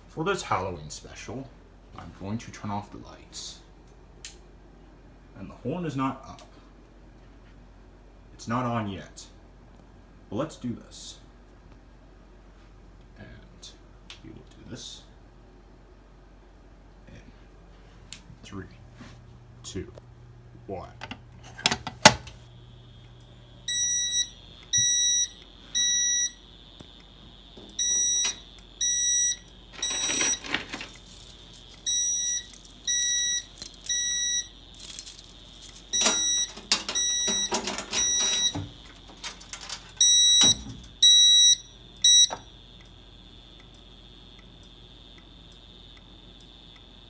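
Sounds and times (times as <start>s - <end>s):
faint steady high tone: 22.6s - 47.0s
fire alarm horn blasts: 22.6s - 47.0s.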